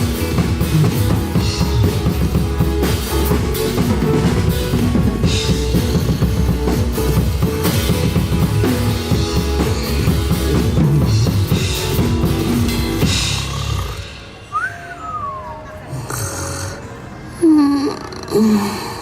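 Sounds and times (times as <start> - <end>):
drum kit playing rock beat: 0.0 - 14.7
rock music: 0.0 - 14.7.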